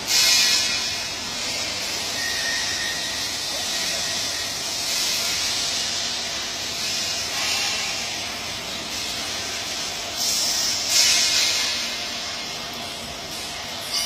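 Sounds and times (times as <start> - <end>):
welding arc hissing and frying: 0.0 - 2.0, 4.6 - 12.4.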